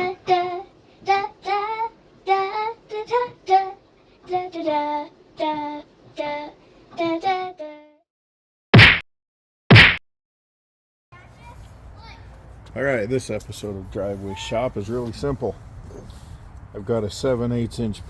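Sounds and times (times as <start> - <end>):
child singing: 0.0 - 8.0.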